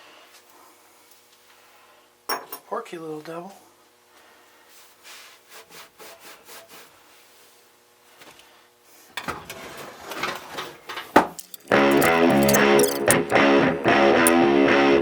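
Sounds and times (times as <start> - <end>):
metal parts clicking and clattering: 11.2 - 13.4.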